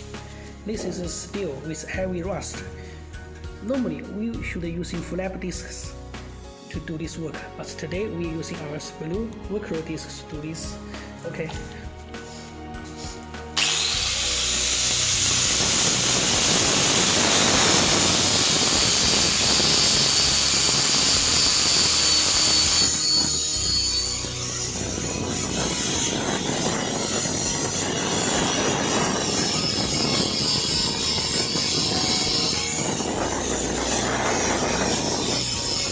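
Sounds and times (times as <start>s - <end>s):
angle grinder grinding rusted steel: 13.6s - 35.9s.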